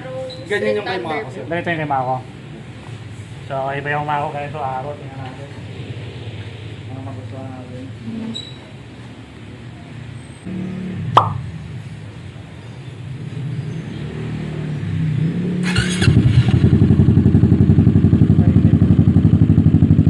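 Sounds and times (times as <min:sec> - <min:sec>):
scooter engine starting and idling: 0:15.6 - 0:20.0.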